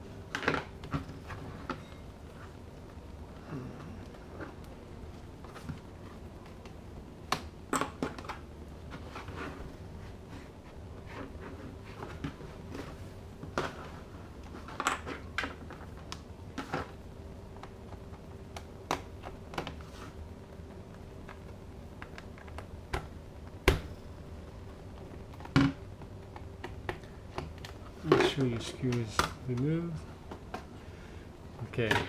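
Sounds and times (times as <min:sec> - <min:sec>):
faint steady hum: 0:00.0 - 0:32.0.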